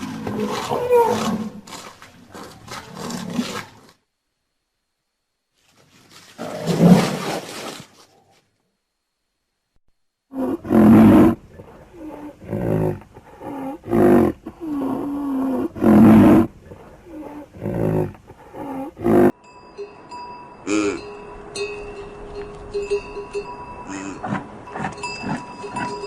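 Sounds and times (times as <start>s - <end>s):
lion roaring: 0.0s - 3.8s, 10.3s - 19.3s
steady ringing tones: 19.3s - 26.0s.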